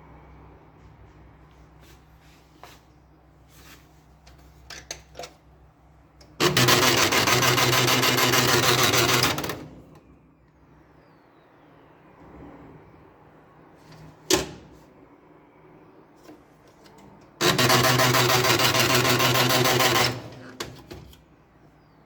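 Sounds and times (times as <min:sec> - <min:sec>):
laser printer grinding: 0:06.4 - 0:09.8, 0:17.4 - 0:20.6.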